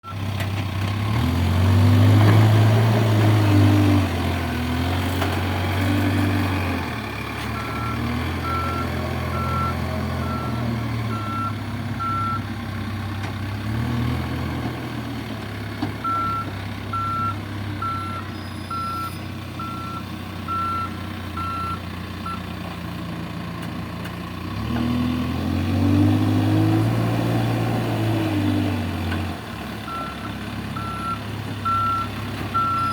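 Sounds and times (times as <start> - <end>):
diesel engine revving: 0.0 - 32.9
reversing alarm beeping: 7.6 - 12.4, 16.0 - 22.4, 29.9 - 32.9.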